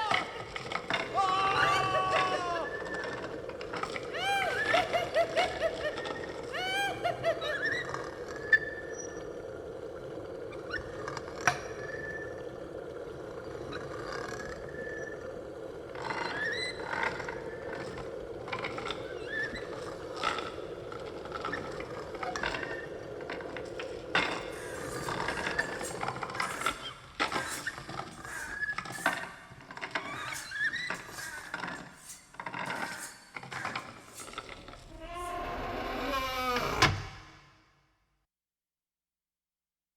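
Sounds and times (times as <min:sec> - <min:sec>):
wailing squealing cries: 0:00.9 - 0:03.4, 0:04.0 - 0:08.0, 0:34.8 - 0:37.0
low drone: 0:34.2 - 0:37.6.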